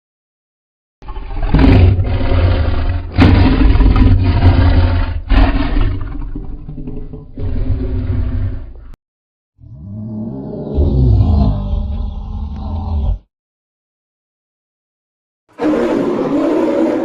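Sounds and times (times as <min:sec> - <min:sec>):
deep rough dinosaur roar: 0:01.0 - 0:09.0, 0:09.6 - 0:13.3, 0:15.6 - 0:17.0.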